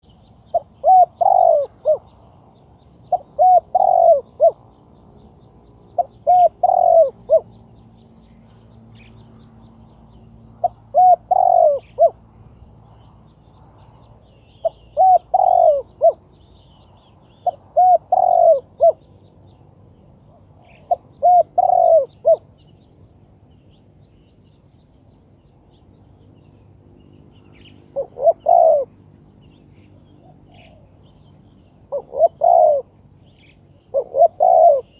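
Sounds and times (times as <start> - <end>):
dove cooing: 0.5 - 2.2, 3.0 - 4.7, 6.0 - 7.6, 10.5 - 12.3, 14.6 - 16.4, 17.4 - 19.1, 20.3 - 22.6, 27.6 - 29.0, 30.2 - 31.0, 31.8 - 33.0, 33.8 - 34.9.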